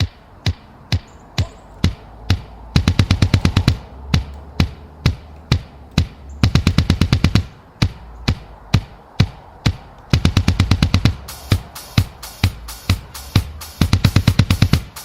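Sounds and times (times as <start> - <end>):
woodpecker pecking wood: 0.0 - 14.4.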